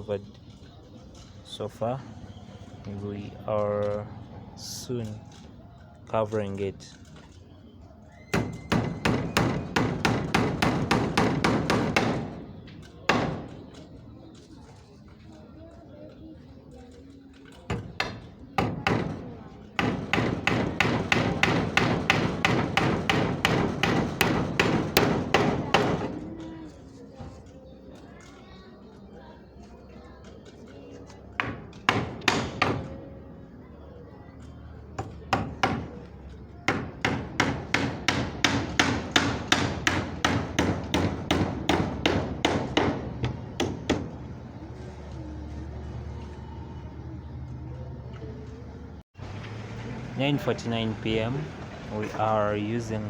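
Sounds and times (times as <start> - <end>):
hammer driving nails into wood: 36.7 - 44.1.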